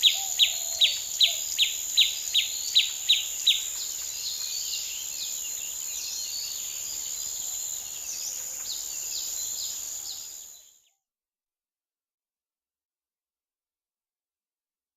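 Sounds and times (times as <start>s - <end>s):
insects droning: 0.0s - 10.8s.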